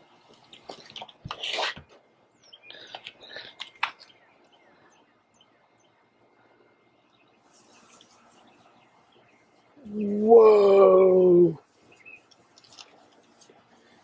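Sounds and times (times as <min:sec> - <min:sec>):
faint bird chirps: 0:02.3 - 0:12.4.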